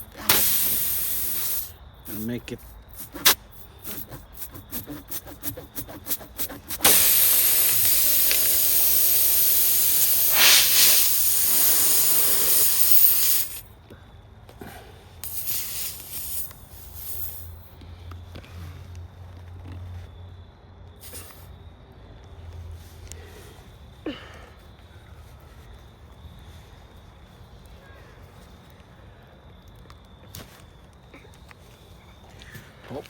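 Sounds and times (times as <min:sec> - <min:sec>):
quick clicks: 0:00.0 - 0:13.6
compressed air hissing: 0:00.0 - 0:13.7, 0:15.2 - 0:17.8, 0:21.0 - 0:21.5.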